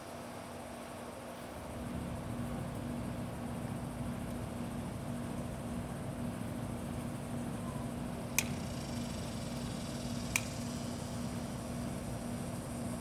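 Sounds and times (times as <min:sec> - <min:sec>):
low steady hum: 0:00.0 - 0:13.0
sharp clicks: 0:08.3 - 0:08.6, 0:10.3 - 0:10.6.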